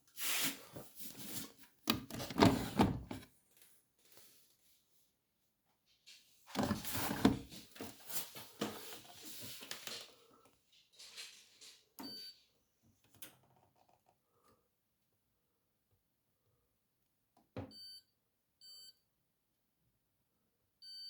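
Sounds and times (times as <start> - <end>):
handling knocks and rubbing: 0.7 - 3.2, 6.5 - 10.0.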